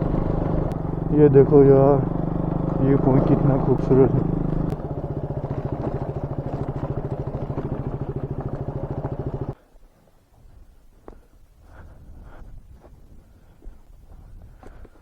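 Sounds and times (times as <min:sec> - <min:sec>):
motorcycle engine idling: 0:00.0 - 0:09.6.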